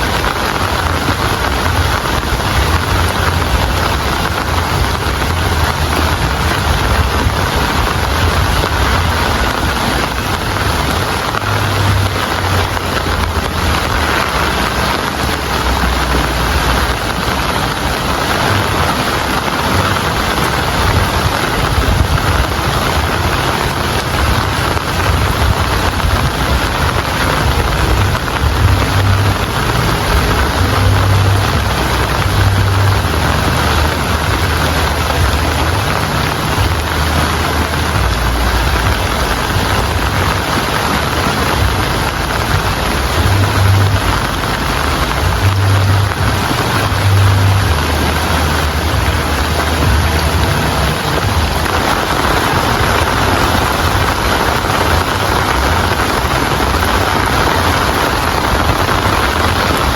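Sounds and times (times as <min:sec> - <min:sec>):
heavy rain falling: 0:00.0 - 0:59.9
low rumble: 0:00.0 - 0:59.9.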